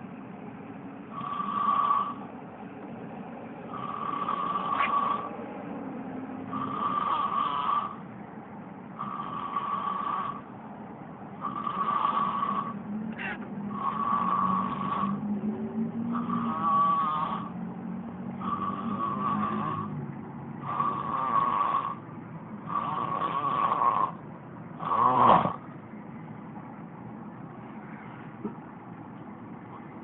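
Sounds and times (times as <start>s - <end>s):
turtle snoring with whistling: 1.1s - 2.2s, 3.7s - 5.4s, 6.5s - 8.0s, 9.0s - 10.5s, 11.4s - 15.4s, 16.0s - 17.6s, 18.3s - 20.0s, 20.6s - 22.0s, 22.7s - 24.2s, 24.8s - 25.6s.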